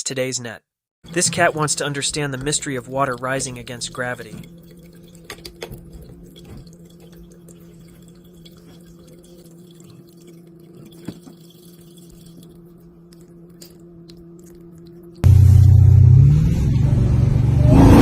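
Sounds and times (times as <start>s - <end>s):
water dripping and trickling: 1.0s - 15.3s
steady low hum: 1.1s - 17.6s.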